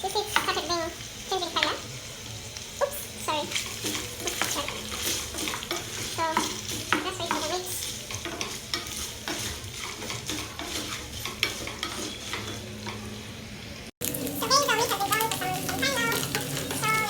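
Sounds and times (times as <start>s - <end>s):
meat sizzling in a pan: 0.0s - 17.0s
utensil scraping a pan: 3.5s - 13.3s.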